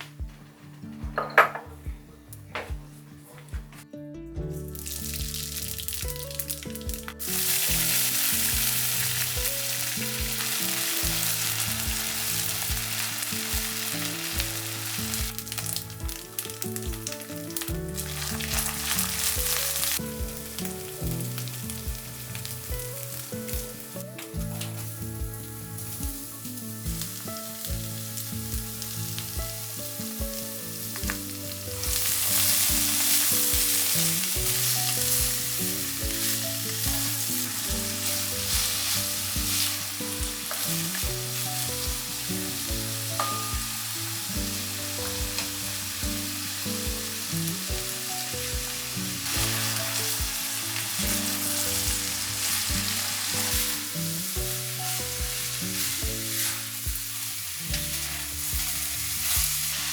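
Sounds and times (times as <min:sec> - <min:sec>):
soft background music: 0:00.0 - 0:59.9
food sizzling in hot oil: 0:04.6 - 0:59.9
stirring: 0:48.2 - 0:59.9.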